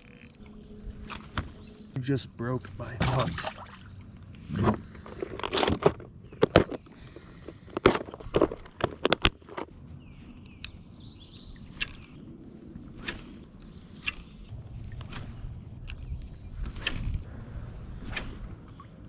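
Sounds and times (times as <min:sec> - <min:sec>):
fishing gear clicking and knocking: 0:04.8 - 0:09.7, 0:11.7 - 0:12.2.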